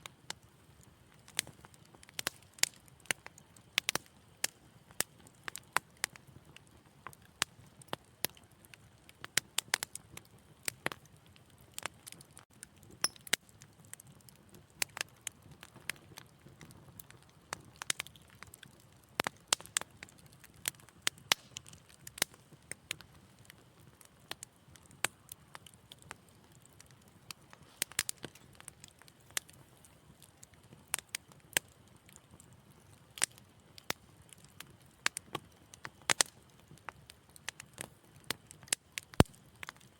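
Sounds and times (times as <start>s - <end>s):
low rumble of burning: 0.0s - 39.9s
wood fire crackling: 0.0s - 39.9s
sharp pops and snaps: 17.2s - 23.6s, 24.4s - 31.7s, 33.2s - 39.9s.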